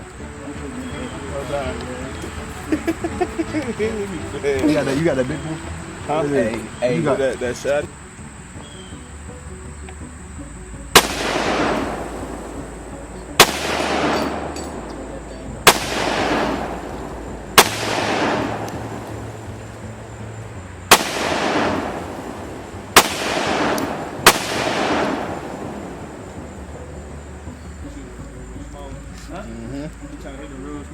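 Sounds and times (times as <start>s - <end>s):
gunshots with rolling echo: 10.9s - 27.3s.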